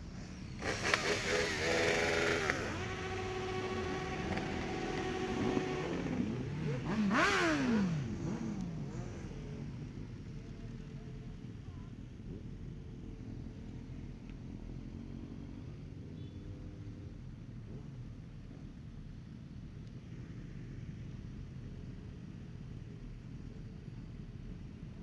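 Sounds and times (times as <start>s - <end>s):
motorcycle engine running steadily: 0.0s - 25.0s
louder engine revving past: 0.6s - 9.2s.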